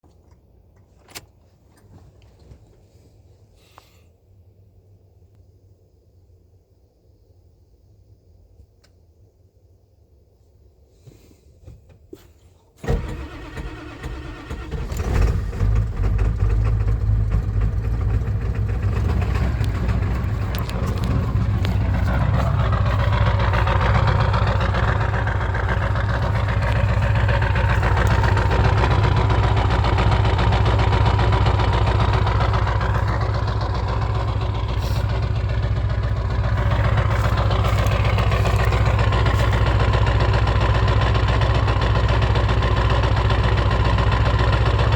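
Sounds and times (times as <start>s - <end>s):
diesel engine starting and idling: 12.8s - 44.9s
engine knocking: 13.0s - 44.9s.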